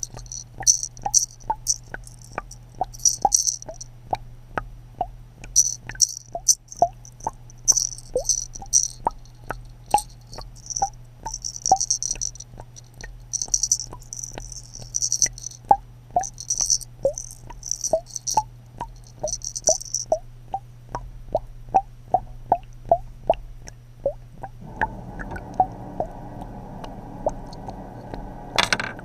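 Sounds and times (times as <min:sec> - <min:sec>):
high rattling: 0:00.0 - 0:03.8, 0:05.6 - 0:15.6, 0:16.2 - 0:20.2
plinking drops: 0:00.0 - 0:03.9, 0:05.6 - 0:20.2
low steady hum: 0:00.0 - 0:29.0.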